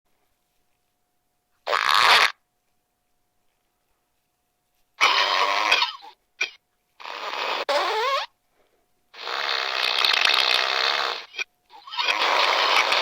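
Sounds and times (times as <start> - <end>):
recorded fart sounds from speaker: 1.6 - 2.4, 5.0 - 8.4, 9.1 - 13.0.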